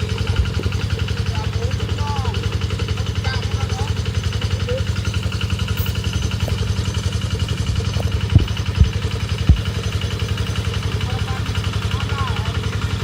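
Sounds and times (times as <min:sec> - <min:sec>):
small engine running: 0:00.0 - 0:13.0
low thumps: 0:07.4 - 0:09.8.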